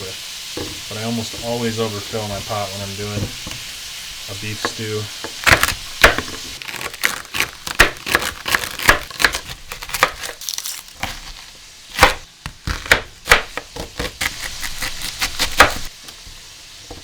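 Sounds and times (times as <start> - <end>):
knife chopping on wooden board: 4.6 - 10.4, 11.0 - 15.9.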